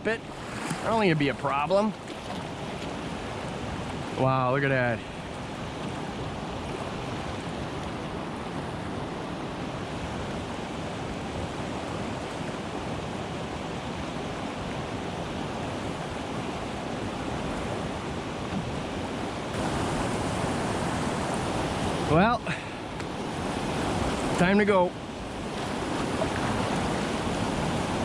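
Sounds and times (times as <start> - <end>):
whitewater rushing: 15.5 - 28.0.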